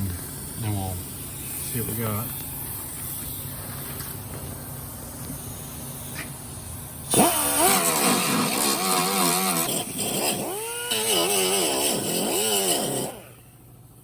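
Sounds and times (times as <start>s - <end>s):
angle grinder grinding steel: 7.1s - 13.2s.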